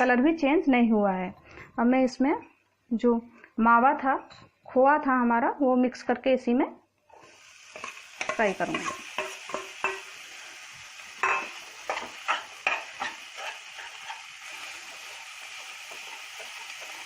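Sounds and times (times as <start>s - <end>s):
food sizzling: 7.0s - 17.0s
spoon scraping a pan: 7.1s - 10.3s, 11.2s - 17.0s.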